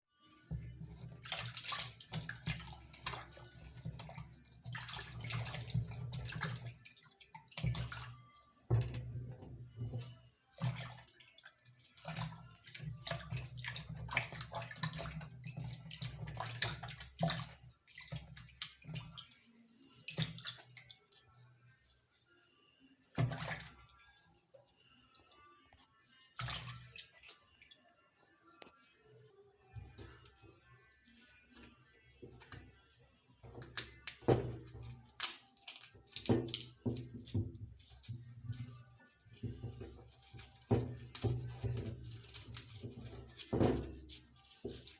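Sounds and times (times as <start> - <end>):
water running and splashing: 0.6 - 10.0.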